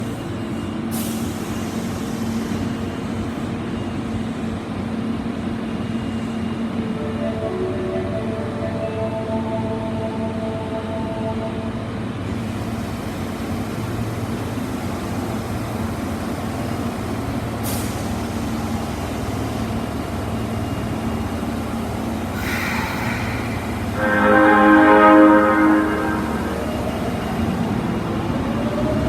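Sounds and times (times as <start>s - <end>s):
train running noise: 0.0s - 29.0s
train door chime: 6.0s - 12.0s
compressed air hiss: 22.3s - 24.0s.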